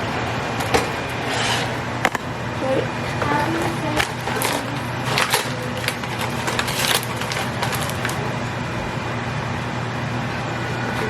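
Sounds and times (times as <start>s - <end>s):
steady low hum: 0.0s - 11.0s
spoon scraping popcorn: 2.9s - 8.5s.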